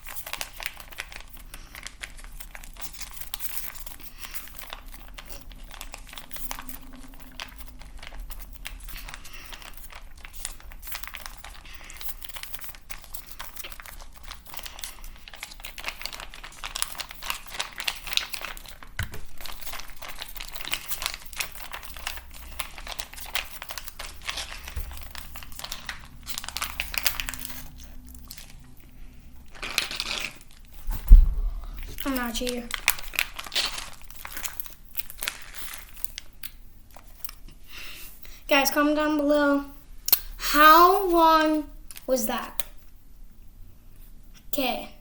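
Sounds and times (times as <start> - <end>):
juice box crinkling: 0.0 - 37.5.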